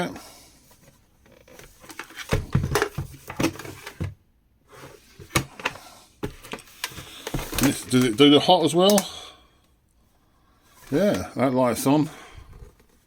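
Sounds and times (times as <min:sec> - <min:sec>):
plastic mini fridge being handled: 0:01.2 - 0:04.2, 0:04.8 - 0:08.2.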